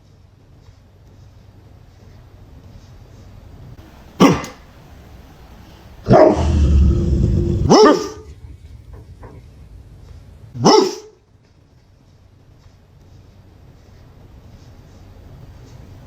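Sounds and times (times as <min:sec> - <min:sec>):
puppy barking: 0:04.2 - 0:04.6, 0:06.1 - 0:06.7, 0:07.5 - 0:08.3, 0:10.6 - 0:11.1
puppy drawn-out whine: 0:06.1 - 0:11.1.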